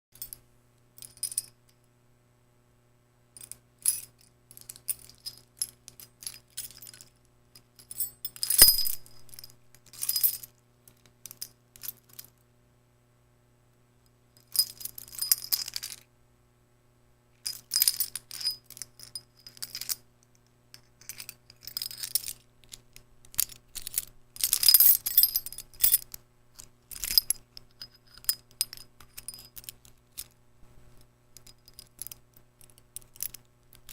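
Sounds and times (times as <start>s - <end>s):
metal keys jingling: 7.8s - 10.5s, 14.5s - 16.0s, 21.0s - 26.1s, 26.9s - 30.4s.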